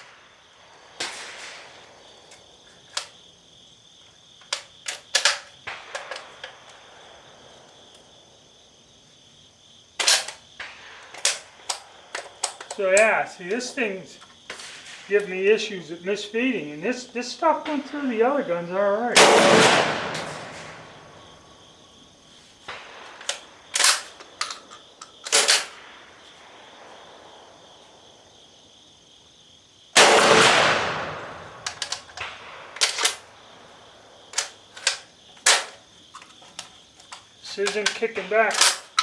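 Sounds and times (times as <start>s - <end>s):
shotgun shots echoing: 1.0s - 1.8s, 19.2s - 21.2s, 30.0s - 33.3s
metallic clacks of gun action: 4.4s - 6.6s, 10.0s - 10.4s, 23.1s - 25.8s, 31.6s - 33.2s, 34.4s - 39.0s.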